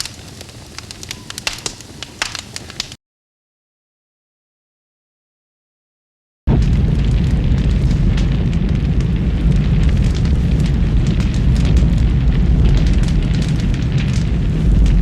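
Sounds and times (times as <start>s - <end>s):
large fire crackling: 0.0s - 3.0s, 6.5s - 15.0s.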